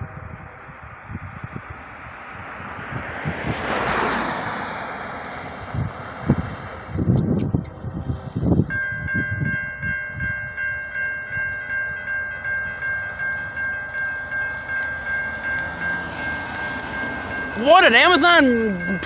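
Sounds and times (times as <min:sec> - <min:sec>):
wind buffeting microphone: 0:00.0 - 0:19.0
crossing warning bell ringing: 0:08.4 - 0:19.0.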